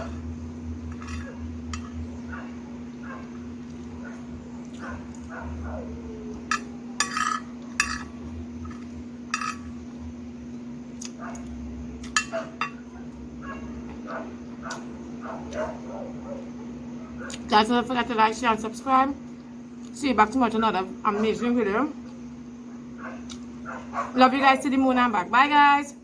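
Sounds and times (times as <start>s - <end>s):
steady low hum: 0.0s - 26.0s
dishes and cutlery clinking: 6.5s - 9.7s, 12.0s - 12.8s.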